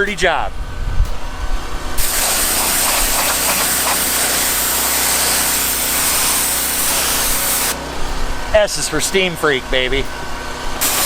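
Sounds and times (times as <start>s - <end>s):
engine droning: 0.0s - 11.0s
pressure washer spray hissing: 2.0s - 7.8s, 10.8s - 11.0s.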